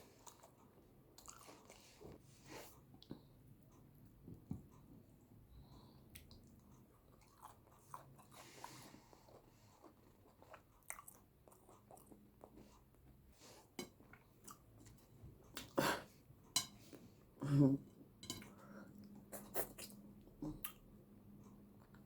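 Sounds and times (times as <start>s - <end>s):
chewing and wet mouth sounds: 0.0s - 2.2s, 6.1s - 13.2s, 14.0s - 15.8s, 18.4s - 22.0s.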